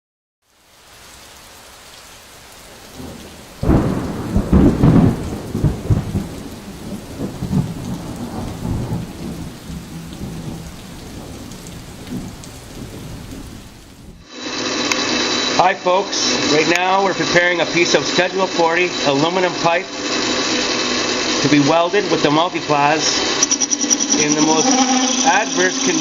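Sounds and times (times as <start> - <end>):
rain and sleet hissing: 0.4 - 26.0
thunder rumble: 2.7 - 14.3.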